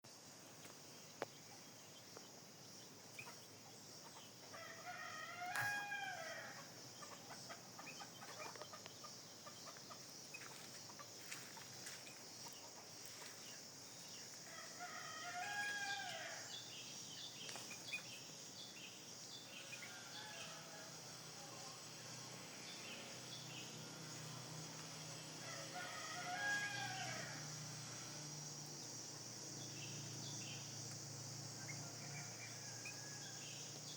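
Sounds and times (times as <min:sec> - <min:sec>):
steady high hiss: 0:00.1 - 0:33.9
rooster crowing: 0:04.5 - 0:06.7, 0:14.5 - 0:16.5, 0:19.6 - 0:21.7, 0:25.3 - 0:27.6, 0:31.7 - 0:33.6.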